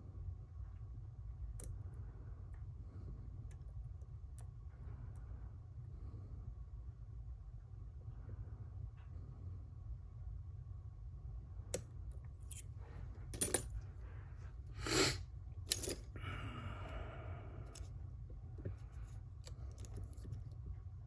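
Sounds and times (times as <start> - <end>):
steady low hum: 0.0 - 21.0
metal lock parts clicking: 12.4 - 12.7, 13.4 - 13.8, 15.7 - 16.1, 19.4 - 20.4.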